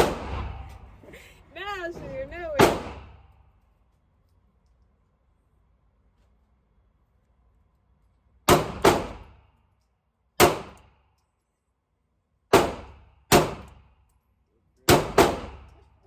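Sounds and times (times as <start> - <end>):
gunshots with ringing echo: 0.0 - 0.9, 2.6 - 3.3.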